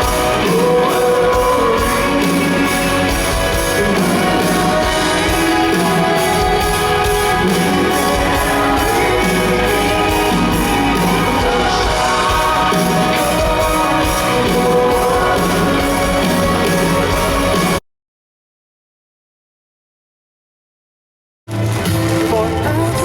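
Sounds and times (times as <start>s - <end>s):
music with a steady beat: 0.0s - 17.8s.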